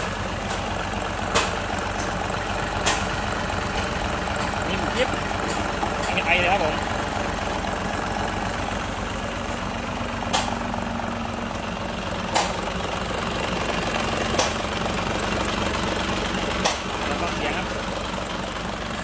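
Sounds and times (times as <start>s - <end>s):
diesel truck engine idling: 0.0s - 19.0s
sharp click: 2.8s - 3.1s.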